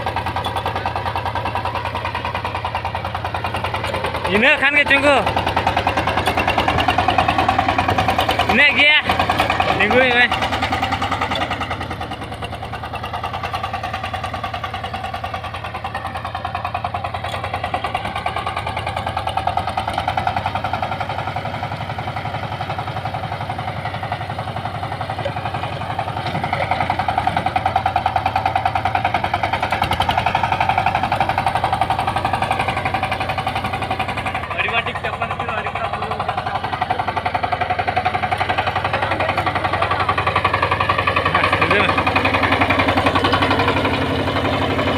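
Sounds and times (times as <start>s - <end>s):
diesel engine running: 0.0s - 44.9s.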